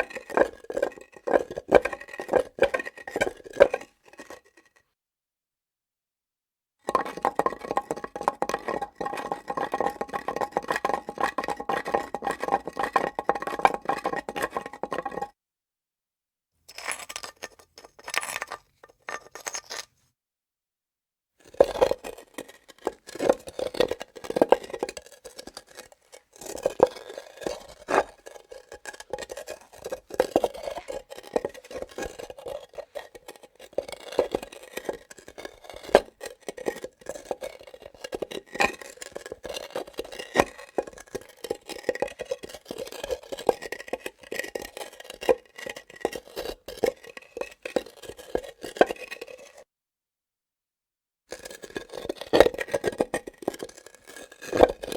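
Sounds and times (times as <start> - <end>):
objects scraping on granite: 0.0 - 4.8, 6.9 - 15.4, 16.7 - 20.0, 21.5 - 49.7, 51.3 - 54.9
hard objects knocking on granite: 6.9 - 15.3.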